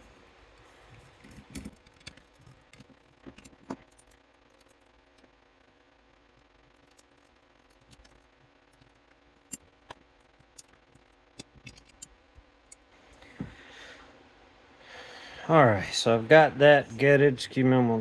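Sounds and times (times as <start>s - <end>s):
small metallic clicks and taps: 6.8s - 13.2s.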